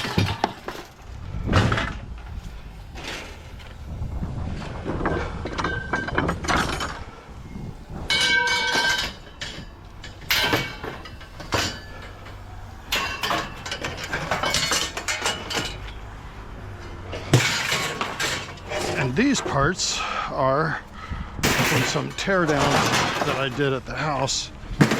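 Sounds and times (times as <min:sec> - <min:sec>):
scrap metal clanking: 0:00.0 - 0:03.8, 0:08.0 - 0:20.2, 0:21.4 - 0:24.9
metal piece ringing: 0:08.1 - 0:16.0.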